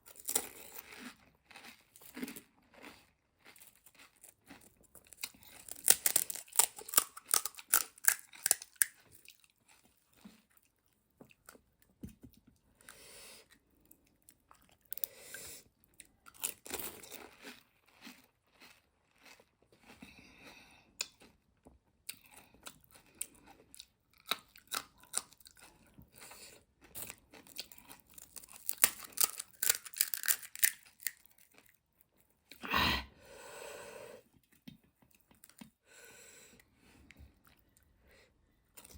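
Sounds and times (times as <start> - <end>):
crisp shells crunching and chewing: 0.0 - 11.8, 13.5 - 32.6.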